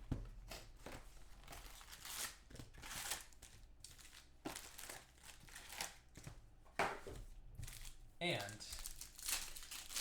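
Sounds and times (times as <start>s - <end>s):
packaging crinkling and tearing: 1.4s - 6.0s, 7.6s - 10.0s.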